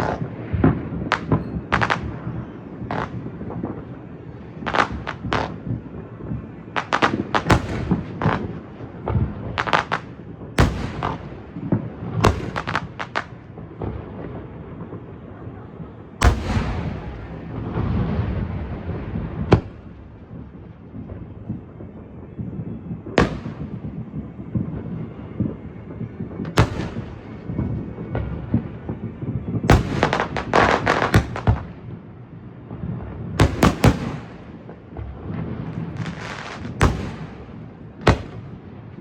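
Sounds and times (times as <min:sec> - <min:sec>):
fireworks sharp bangs: 0:00.0 - 0:15.1, 0:16.2 - 0:21.6, 0:22.4 - 0:32.0, 0:33.0 - 0:39.0
low rumble of fireworks: 0:00.0 - 0:39.0
heavy firework boom: 0:16.2 - 0:19.9, 0:36.8 - 0:38.5.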